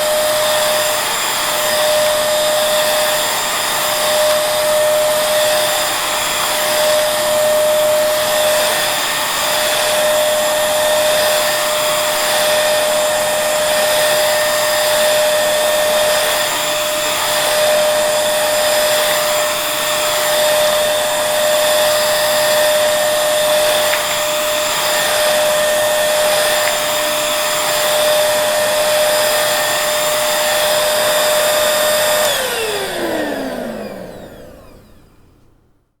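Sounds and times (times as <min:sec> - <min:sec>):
vacuum motor spinning down: 0:00.0 - 0:35.6
vacuum cleaner running: 0:00.0 - 0:35.9.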